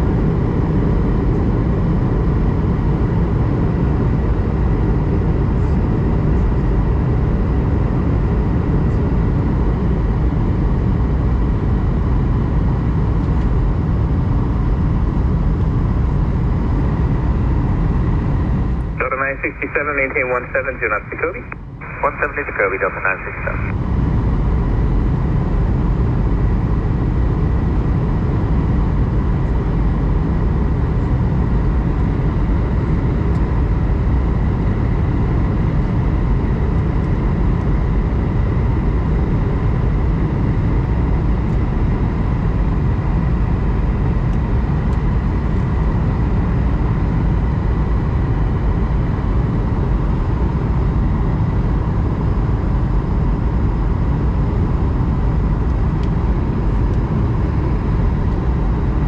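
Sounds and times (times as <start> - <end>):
faint steady whine: 18.6 - 23.7
airliner cabin rumble: 18.7 - 23.7.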